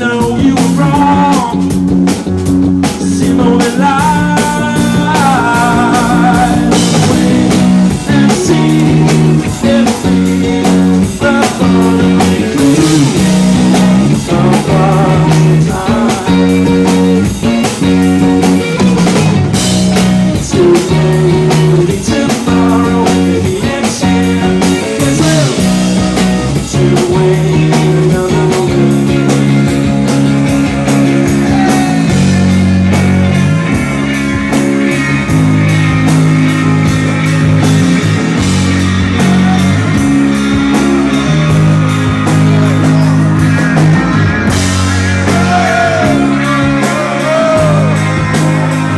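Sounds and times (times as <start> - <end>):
bass guitar: 0.0 - 48.9
electric guitars: 0.0 - 48.9
steady drum kit beat: 0.0 - 48.9.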